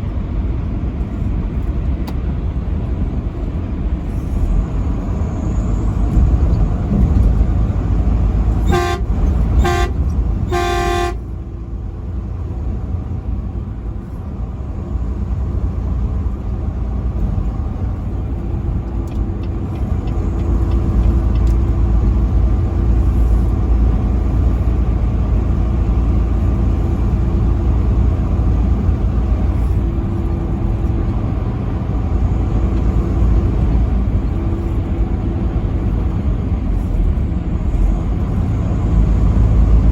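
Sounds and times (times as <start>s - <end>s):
road and engine noise: 0.0s - 39.9s
truck air horn blasts: 8.5s - 11.4s.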